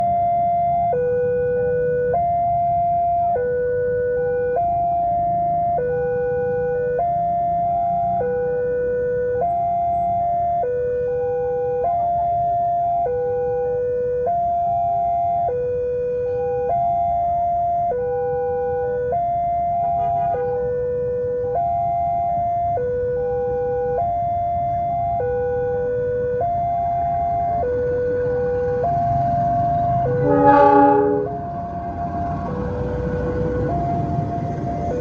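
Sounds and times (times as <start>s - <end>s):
loud horn blast: 19.8s - 20.7s, 29.8s - 31.7s.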